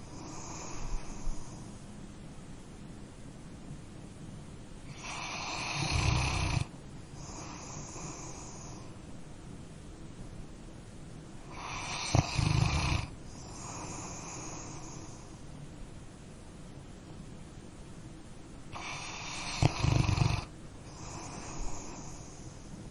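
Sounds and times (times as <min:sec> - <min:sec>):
dog snoring: 0:00.0 - 0:01.7, 0:04.9 - 0:08.9, 0:11.5 - 0:15.3, 0:18.7 - 0:22.5
dog breathing softly: 0:00.0 - 0:01.9, 0:04.9 - 0:09.0, 0:11.5 - 0:15.5, 0:18.7 - 0:22.9.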